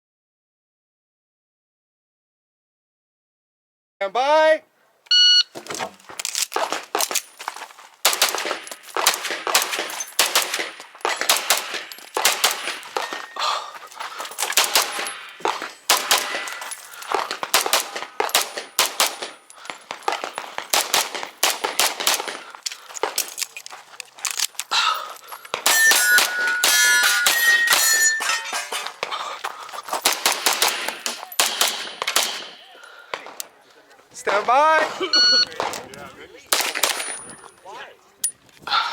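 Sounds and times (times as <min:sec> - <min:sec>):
pistol shots: 0:08.0 - 0:13.4, 0:14.4 - 0:23.2, 0:25.5 - 0:28.2, 0:30.0 - 0:33.5, 0:36.5 - 0:37.2
metallic ringing: 0:25.6 - 0:29.0.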